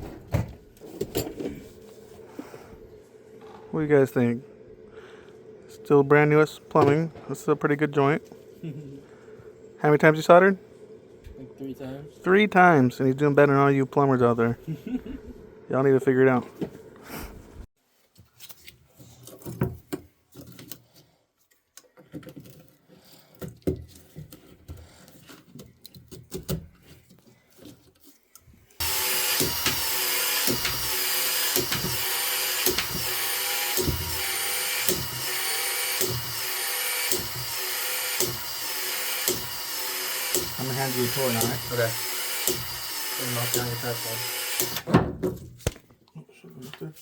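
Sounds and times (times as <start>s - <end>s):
tools clicking and knocking: 28.8s - 38.4s, 41.4s - 42.8s
loud steady motor: 28.8s - 44.9s.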